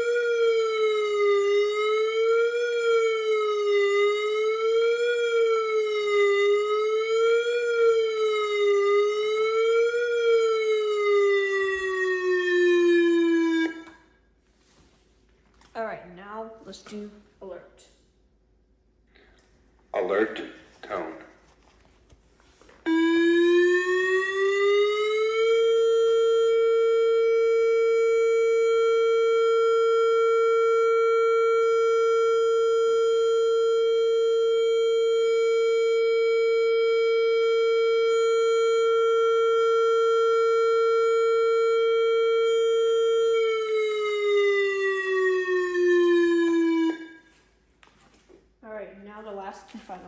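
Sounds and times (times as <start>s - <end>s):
siren wail from small speaker: 0.0s - 14.2s, 22.8s - 47.4s.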